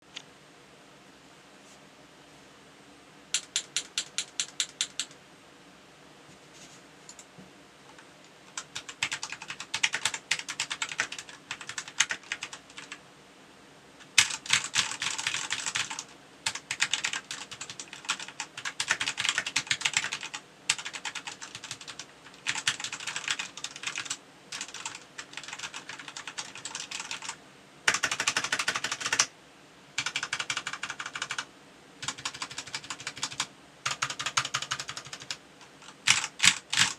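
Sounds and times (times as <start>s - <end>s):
mechanical keyboard typing: 3.3s - 5.2s, 8.5s - 13.0s, 14.0s - 29.3s, 30.0s - 36.9s.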